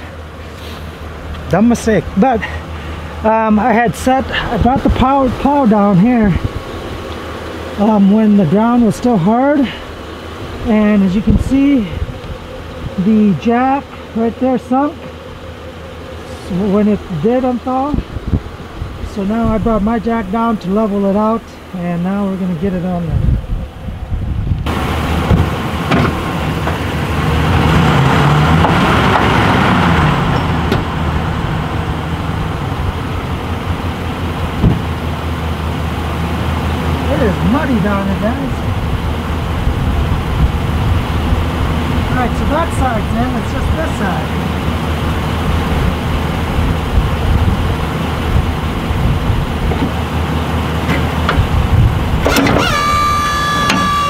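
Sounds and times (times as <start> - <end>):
high whine: 0.0 - 54.0
truck engine idling: 0.0 - 54.0
sharp knocks: 34.6 - 34.9, 53.6 - 54.0.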